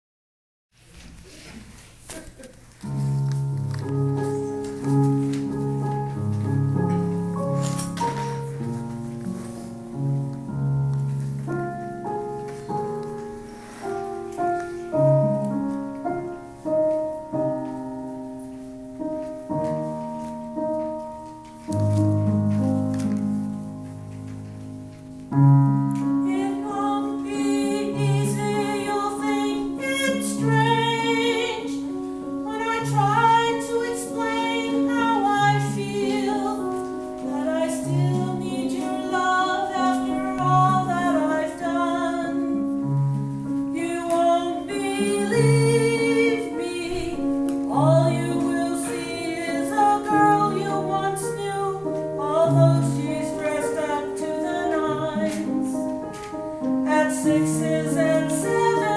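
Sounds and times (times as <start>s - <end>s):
piano accompaniment: 2.2s - 58.9s
woman singing with vibrato: 26.2s - 42.6s, 43.8s - 55.9s, 56.8s - 58.9s.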